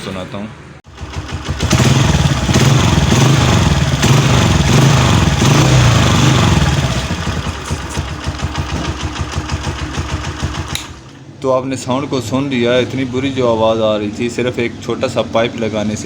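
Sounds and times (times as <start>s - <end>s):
motorcycle engine revving: 0.9s - 11.1s.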